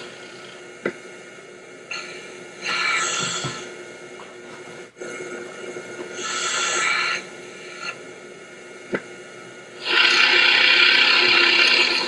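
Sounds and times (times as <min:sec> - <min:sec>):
snoring: 0:06.2 - 0:07.3.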